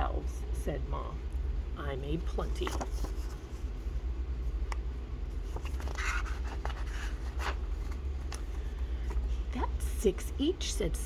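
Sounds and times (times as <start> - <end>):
steady low hum: 0.0 - 11.0
paper page rustling: 2.3 - 3.7, 5.3 - 9.3.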